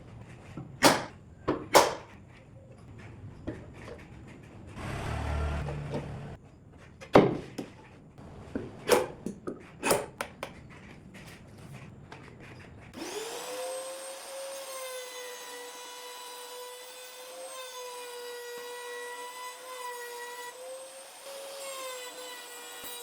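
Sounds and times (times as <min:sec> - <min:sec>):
wooden knocks and clunks: 0:03.4 - 0:06.4, 0:07.0 - 0:07.8
rough wooden scraping slide: 0:03.7 - 0:06.4.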